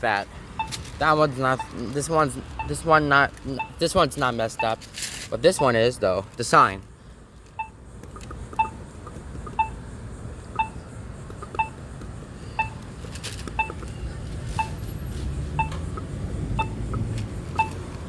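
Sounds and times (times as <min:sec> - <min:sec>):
two-pitched locator beep: 0:02.6 - 0:02.8, 0:03.6 - 0:03.9, 0:05.6 - 0:05.8, 0:11.6 - 0:11.8, 0:13.6 - 0:13.8, 0:14.6 - 0:14.8, 0:15.6 - 0:15.8, 0:16.6 - 0:16.8.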